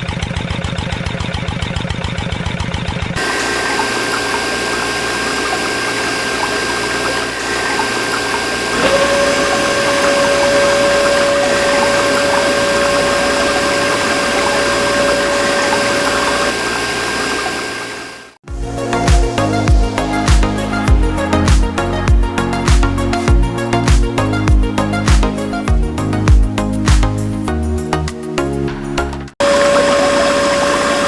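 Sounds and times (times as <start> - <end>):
water pump running: 2.9 - 25.2, 29.4 - 31.0
steady whine: 3.2 - 23.5.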